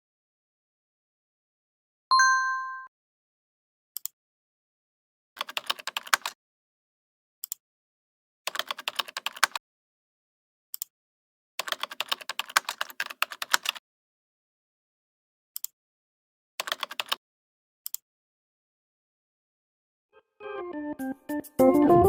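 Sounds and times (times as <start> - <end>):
keyboard typing clicks: 5.4 - 6.4, 8.5 - 9.6, 11.6 - 13.8, 16.6 - 17.2.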